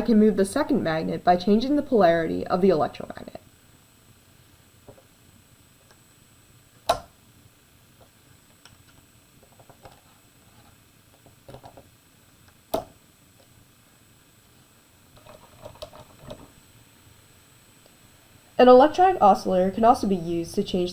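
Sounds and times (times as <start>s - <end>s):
faint ticks and handling noise: 7.9s - 16.6s.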